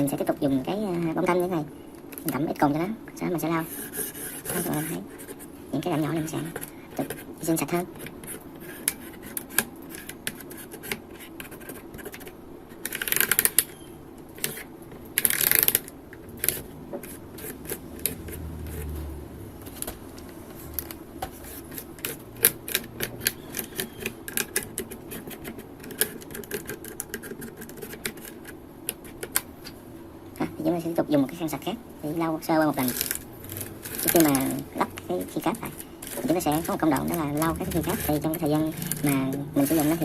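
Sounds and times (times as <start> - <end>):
cotton swab scrubbing keyboard: 3.6 - 13.5, 16.4 - 19.0, 19.7 - 29.4, 32.6 - 40.0.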